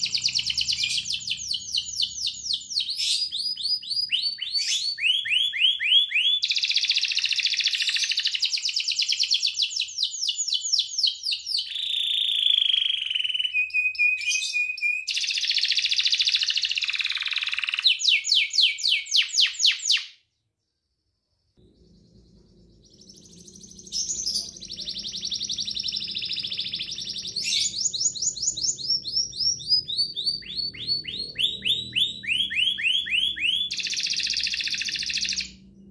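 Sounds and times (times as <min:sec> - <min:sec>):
canary singing trills: 0:00.0 - 0:20.2, 0:21.3 - 0:35.9.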